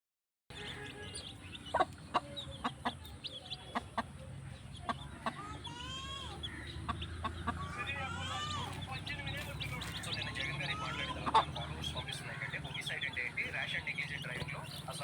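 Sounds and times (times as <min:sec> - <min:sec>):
chickens clucking: 0:00.5 - 0:15.0.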